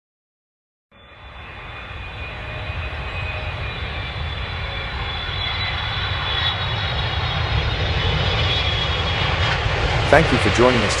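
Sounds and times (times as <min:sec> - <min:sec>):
aircraft engine rumble and whine: 0:00.9 - 0:11.0.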